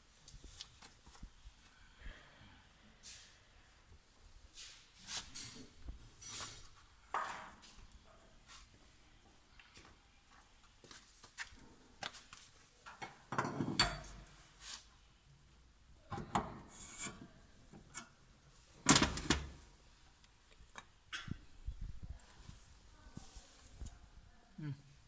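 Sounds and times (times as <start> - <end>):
tools clattering on machine parts: 13.0 - 14.3, 18.8 - 19.6.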